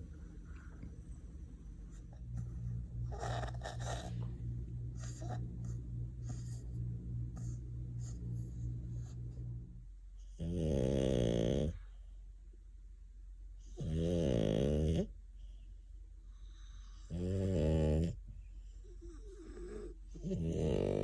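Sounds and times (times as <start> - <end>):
dog snoring: 1.8 - 9.5, 10.2 - 12.0, 13.6 - 15.2, 16.4 - 21.0.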